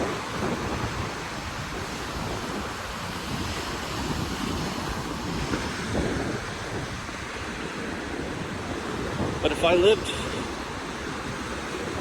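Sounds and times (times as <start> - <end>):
surf washing onto shore: 0.0 - 12.0
wind buffeting microphone: 0.0 - 12.0.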